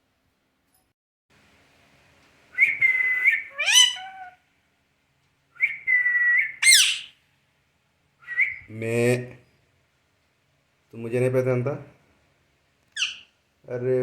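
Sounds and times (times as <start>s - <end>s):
parrot whistling and squawking: 2.6s - 4.4s, 5.7s - 7.2s, 13.0s - 13.3s.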